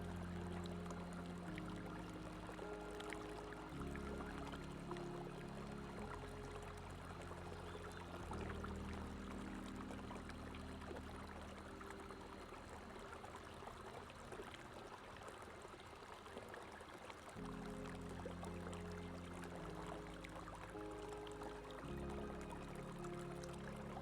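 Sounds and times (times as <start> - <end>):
soft low music chords: 0.0 - 15.4, 17.3 - 24.0
water flowing and splashing: 0.0 - 24.0.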